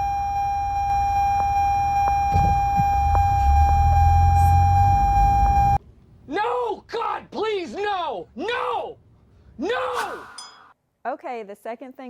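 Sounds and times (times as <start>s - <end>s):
seatbelt reminder beep: 0.0s - 5.8s
car engine and road rumble: 0.0s - 6.2s.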